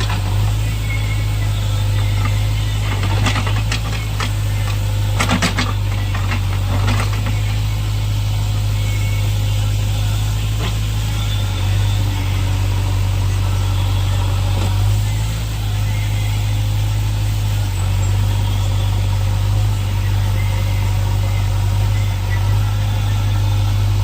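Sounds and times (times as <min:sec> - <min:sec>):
diesel engine running: 0:00.0 - 0:24.0
sharp metallic knocks and rattles: 0:05.2 - 0:07.4.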